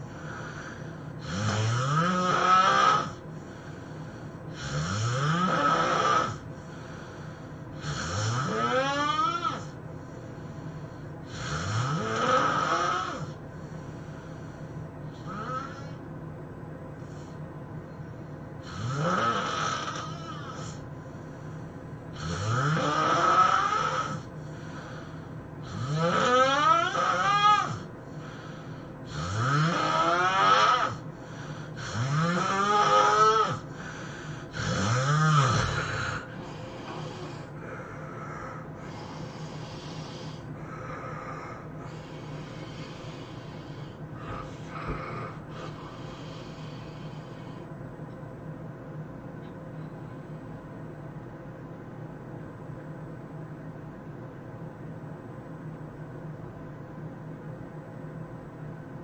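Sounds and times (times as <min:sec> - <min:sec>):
man snoring loudly: 0:00.0 - 0:03.2, 0:04.5 - 0:06.5, 0:07.8 - 0:09.8, 0:11.2 - 0:13.4, 0:15.1 - 0:16.0, 0:18.6 - 0:20.8, 0:22.1 - 0:47.6
faint steady hum: 0:00.0 - 0:59.0.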